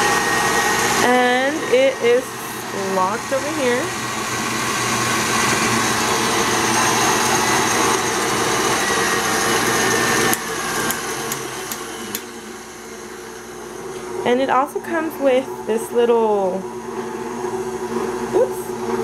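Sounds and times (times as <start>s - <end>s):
stand mixer motor whirring: 0.0s - 19.0s
mixer clicks: 8.7s - 12.4s.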